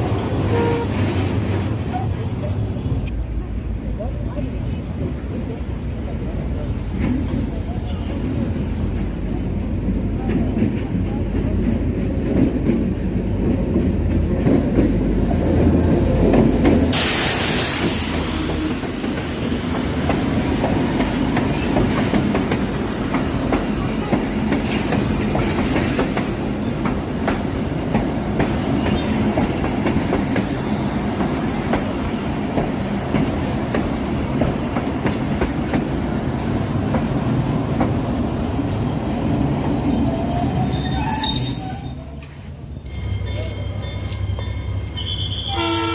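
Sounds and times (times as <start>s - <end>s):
burst of hiss: 16.9s - 18.5s
high wheel squeal: 37.9s - 43.7s, 44.8s - 45.8s.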